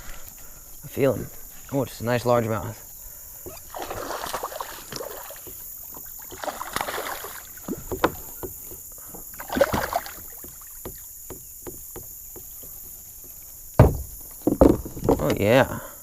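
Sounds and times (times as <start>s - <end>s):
water splashing: 3.4s - 15.4s
knocks and clicks against a kayak: 5.4s - 6.6s, 7.6s - 15.6s.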